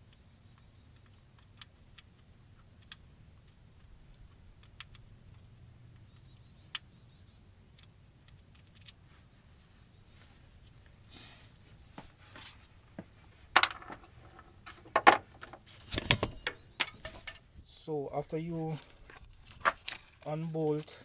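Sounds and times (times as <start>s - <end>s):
small clicks and taps: 0.0s - 6.9s, 7.7s - 9.1s.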